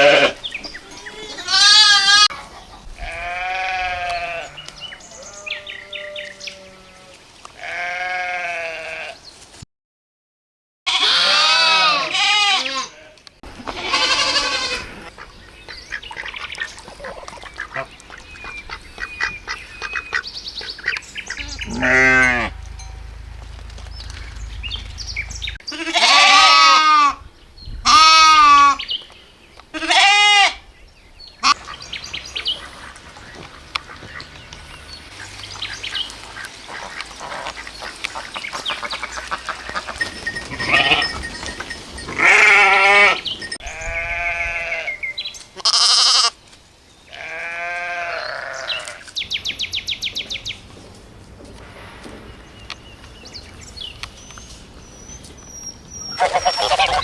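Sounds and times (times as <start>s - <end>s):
livestock bleating: 0.0s - 2.4s, 3.0s - 9.2s, 10.9s - 15.1s, 21.3s - 22.6s, 25.7s - 27.2s, 27.8s - 28.8s, 29.7s - 30.6s, 39.8s - 41.2s, 42.1s - 46.4s, 47.1s - 49.0s, 56.2s - 57.0s
low rumble: 21.2s - 25.6s
short chirping calls: 54.0s - 57.0s.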